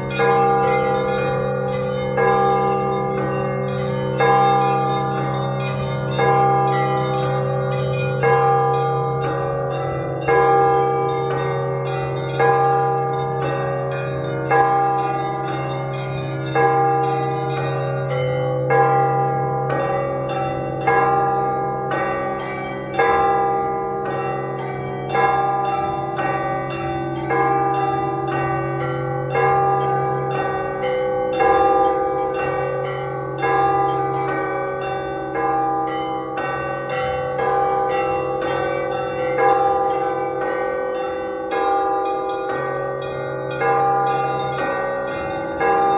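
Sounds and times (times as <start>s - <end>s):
small bells chiming rapidly: 0.0s - 19.2s, 24.2s - 45.9s
low bell hum: 0.0s - 22.1s.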